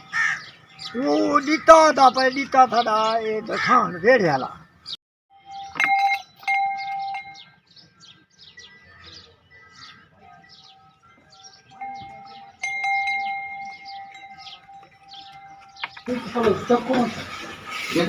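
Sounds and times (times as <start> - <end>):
small birds chirping: 0.0 - 18.0
metal bells ringing: 5.3 - 7.7, 8.5 - 18.0.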